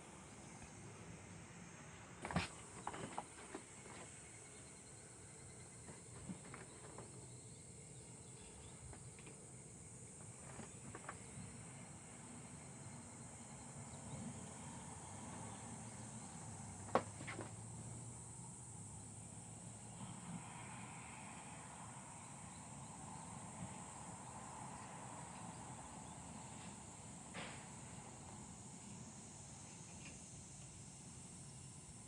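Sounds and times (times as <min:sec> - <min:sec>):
steady high hiss: 0:07.2 - 0:32.0.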